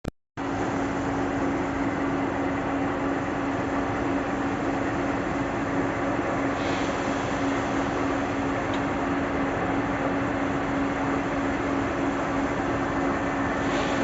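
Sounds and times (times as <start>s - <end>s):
machine hum with rushing noise: 0.4s - 14.0s.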